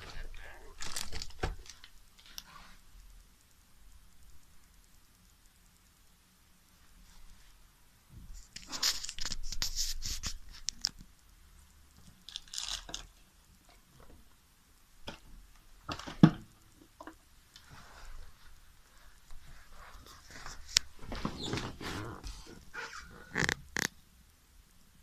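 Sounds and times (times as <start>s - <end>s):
packaging being torn open: 12.3s - 13.1s.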